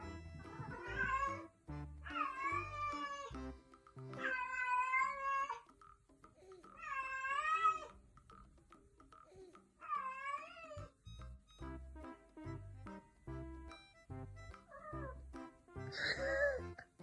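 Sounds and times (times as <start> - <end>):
background music: 0.0 - 9.4, 10.4 - 17.0
cat meowing: 0.5 - 1.5, 2.1 - 3.4, 4.2 - 5.6, 6.8 - 7.9, 9.8 - 11.0.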